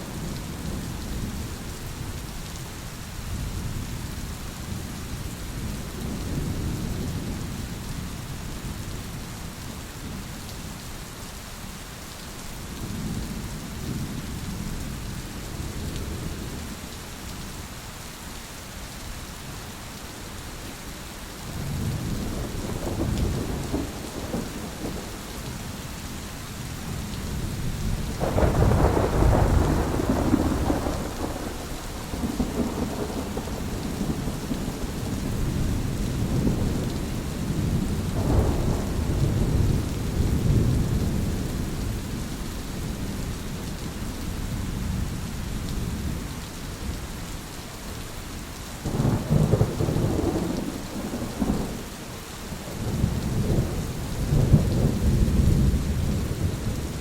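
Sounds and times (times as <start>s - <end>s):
steady rain: 0.0s - 57.0s
thunder rumbling: 21.6s - 25.8s, 26.8s - 42.2s, 48.9s - 51.9s, 52.6s - 57.0s.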